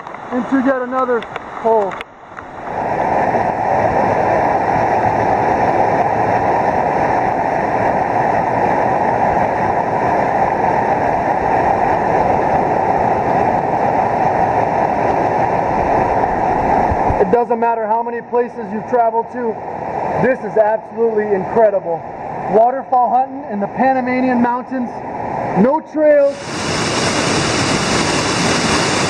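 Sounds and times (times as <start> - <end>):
waterfall rushing: 26.3 - 29.0.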